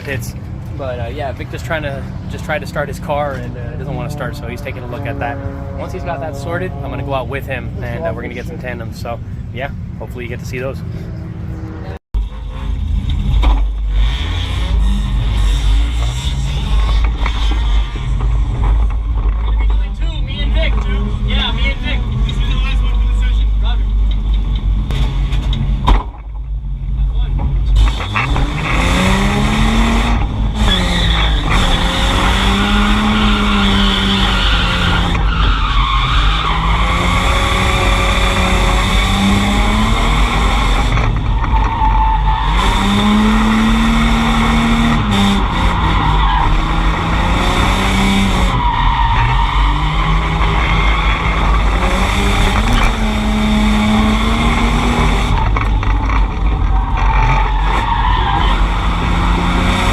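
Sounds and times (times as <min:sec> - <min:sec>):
car engine revving: 0:00.0 - 0:59.9
tyres squealing and skidding: 0:27.8 - 0:59.9.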